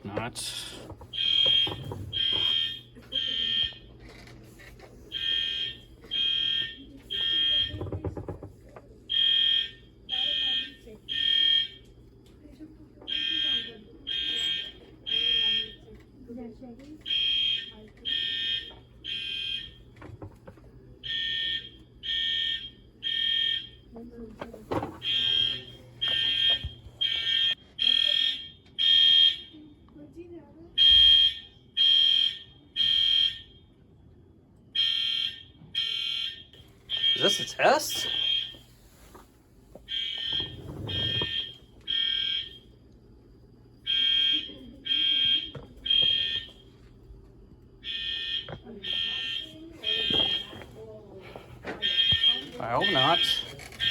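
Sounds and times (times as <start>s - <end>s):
fire alarm horn blasts: 1.1s - 4.0s, 5.1s - 8.0s, 9.1s - 11.9s, 13.1s - 15.9s, 17.1s - 19.9s, 21.0s - 23.9s, 24.8s - 29.6s, 30.8s - 33.9s, 34.7s - 39.2s, 39.9s - 42.7s, 43.8s - 46.8s, 47.8s - 50.8s, 51.4s - 53.9s.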